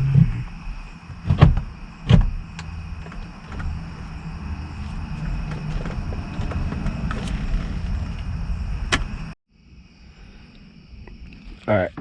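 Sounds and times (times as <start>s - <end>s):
rumbling handling noise: 0.0s - 9.4s.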